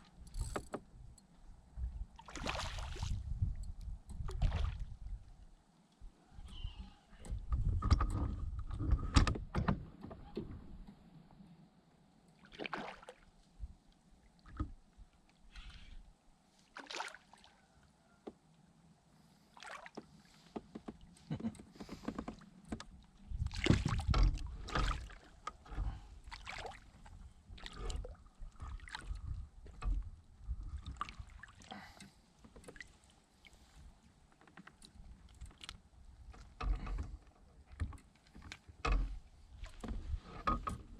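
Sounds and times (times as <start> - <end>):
water against hull: 0.0 - 11.4, 12.4 - 18.5, 19.2 - 40.9
knocks and clatters on kayak: 7.2 - 10.9, 20.0 - 26.1, 32.4 - 33.0, 34.2 - 40.9.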